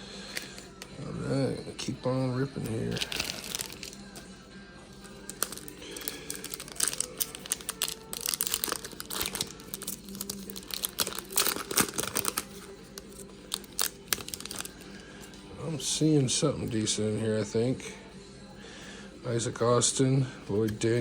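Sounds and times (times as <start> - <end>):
plastic wrapper tearing and crinkling: 2.9 - 4.0, 5.0 - 15.0.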